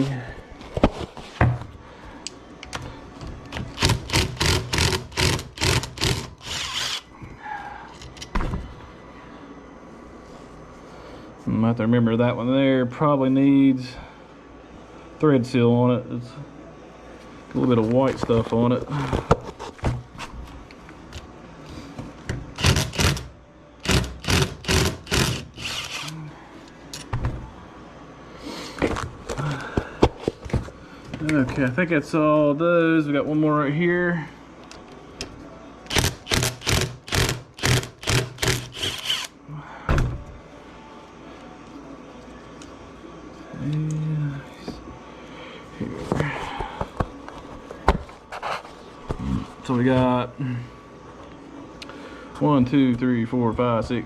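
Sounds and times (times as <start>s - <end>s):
ratchet wrench rasping: 3.8s - 7.1s, 22.6s - 26.1s, 35.9s - 39.3s
power tool loud mechanical bursts: 35.9s - 39.3s.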